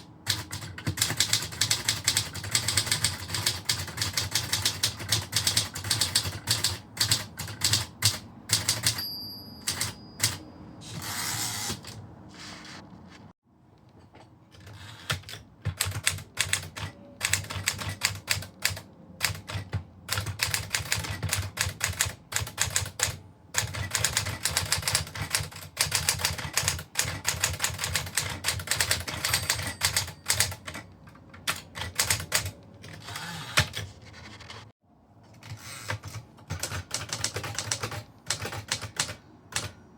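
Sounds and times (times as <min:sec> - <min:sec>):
typewriter keys clicking: 0:00.3 - 0:09.0, 0:14.6 - 0:33.9, 0:35.4 - 0:39.7
typewriter bell ring: 0:08.5 - 0:11.4, 0:28.7 - 0:30.9.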